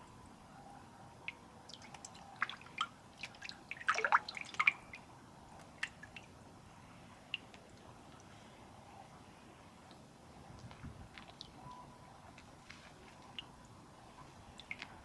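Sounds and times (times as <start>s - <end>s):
water drips and splashes: 1.2s - 6.4s, 9.9s - 15.0s.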